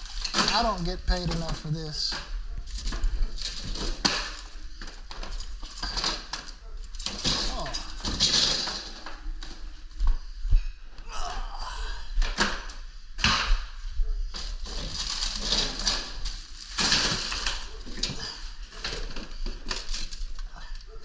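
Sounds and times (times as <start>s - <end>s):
rustling: 14.3s - 21.0s.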